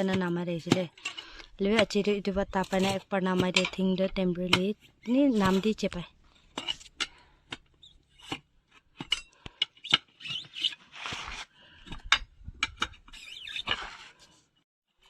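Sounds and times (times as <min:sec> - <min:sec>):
rubber rubbing and scraping: 0:09.8 - 0:11.5, 0:12.6 - 0:14.4.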